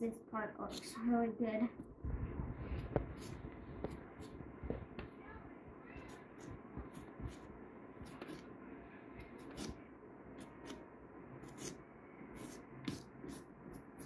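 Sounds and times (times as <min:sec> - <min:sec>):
tool scratching pumpkin rind: 0:11.4 - 0:11.8.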